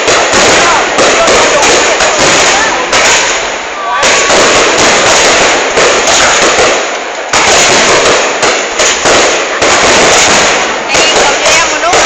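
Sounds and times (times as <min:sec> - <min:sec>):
fireworks bursts and crackle: 0:00.0 - 0:12.0.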